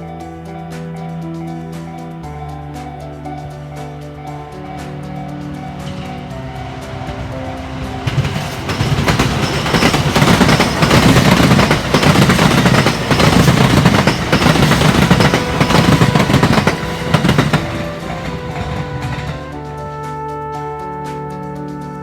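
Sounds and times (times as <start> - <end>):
electric train passing: 0.0 - 20.0
train wheels clacking on rail joints: 3.8 - 19.6.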